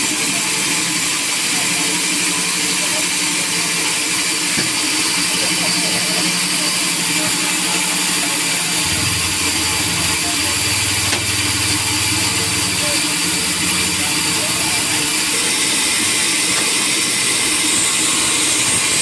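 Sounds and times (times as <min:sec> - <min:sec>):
sawmill machinery whining: 0:00.2 - 0:19.0
deep steady hum: 0:08.7 - 0:15.5.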